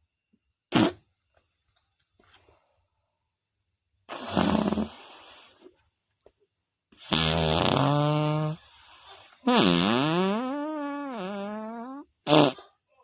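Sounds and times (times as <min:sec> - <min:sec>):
mouth fart sounds: 0:00.7 - 0:01.1, 0:04.1 - 0:05.6, 0:07.0 - 0:12.7.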